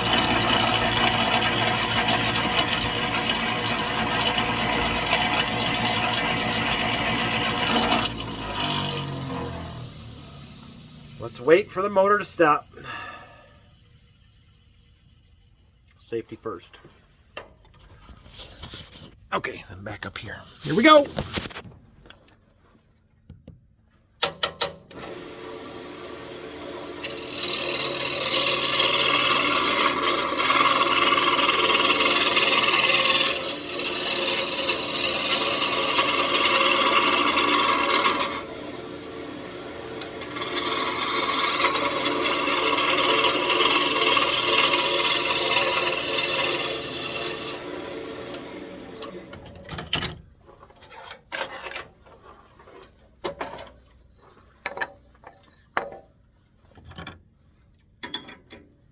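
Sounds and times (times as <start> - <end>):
lathe motor hum: 0.0 - 11.4, 25.1 - 49.2
turning tool scraping hiss: 40.2 - 47.6.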